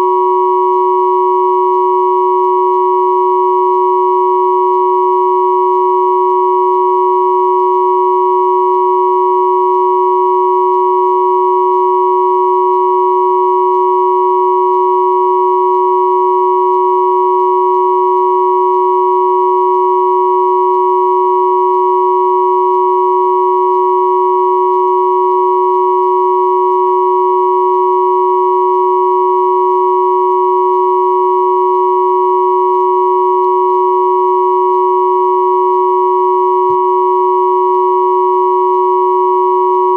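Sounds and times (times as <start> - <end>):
steady sine tone drone: 0.0 - 39.9.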